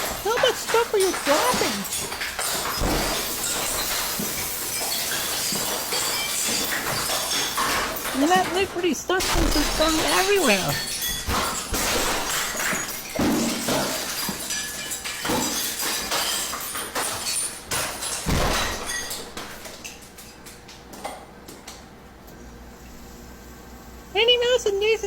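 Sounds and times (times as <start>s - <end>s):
things crashing: 0.0s - 19.8s
glass pieces tinkling: 0.0s - 20.0s
glass shattering: 0.0s - 20.3s.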